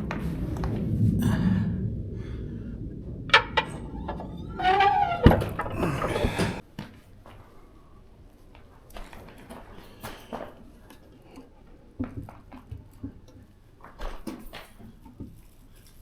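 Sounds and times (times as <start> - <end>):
low rumble: 0.0 - 6.6.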